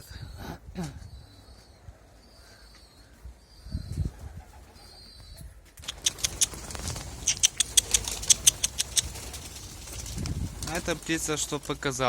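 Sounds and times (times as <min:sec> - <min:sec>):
sharp clicks: 0:05.8 - 0:09.4
rustling: 0:05.8 - 0:12.0
steady rushing noise: 0:06.4 - 0:12.0.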